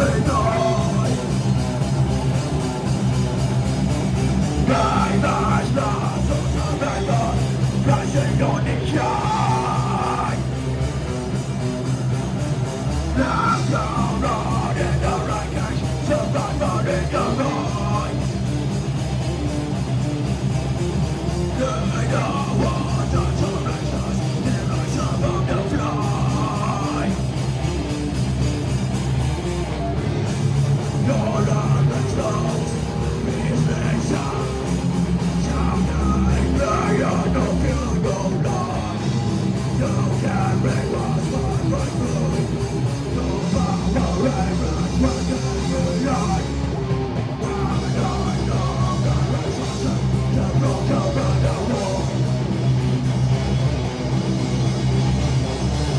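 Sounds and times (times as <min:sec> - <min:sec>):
vocalist singing: 0:00.0 - 0:01.8, 0:04.2 - 0:10.8, 0:13.0 - 0:18.4, 0:21.4 - 0:27.4, 0:30.8 - 0:52.6
distorted electric guitars: 0:00.0 - 0:55.9
fast drumming: 0:00.0 - 0:55.9
live heavy metal band: 0:00.0 - 0:55.9.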